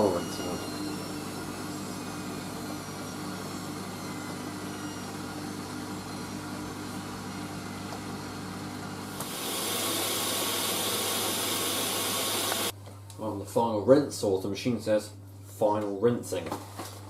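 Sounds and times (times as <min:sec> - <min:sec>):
washing machine humming: 0:00.0 - 0:12.8.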